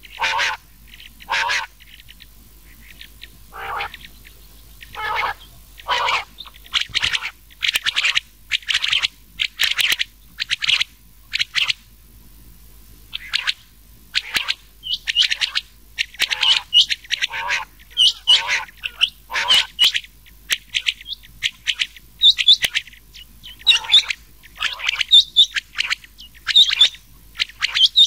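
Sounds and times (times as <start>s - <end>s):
quail calling: 0.0s - 11.8s, 13.1s - 28.0s.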